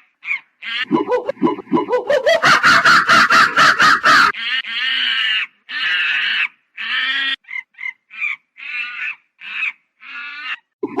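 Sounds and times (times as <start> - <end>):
monkey calling: 0.3 - 6.5.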